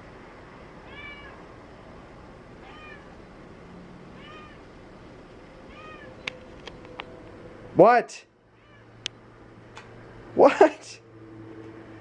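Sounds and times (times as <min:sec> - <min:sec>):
cat meowing: 0:00.8 - 0:01.4, 0:02.6 - 0:03.2, 0:04.1 - 0:04.7, 0:05.7 - 0:06.2, 0:08.5 - 0:09.0.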